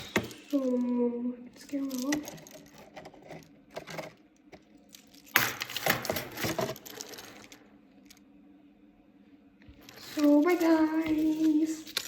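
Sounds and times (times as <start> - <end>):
packaging clicking and rustling: 9.8 - 12.0.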